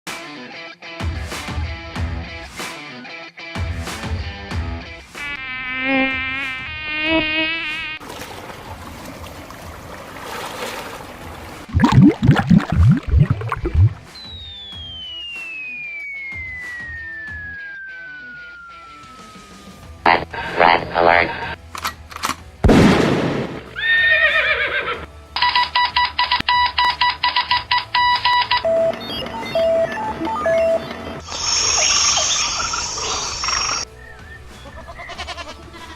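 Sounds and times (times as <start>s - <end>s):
rising bubbly bloops: 11.7s - 14.1s
slow low beeps: 11.8s - 20.0s, 27.6s - 31.2s
wavering buzzing tone: 15.1s - 21.6s
horse whinnying: 23.8s - 25.1s.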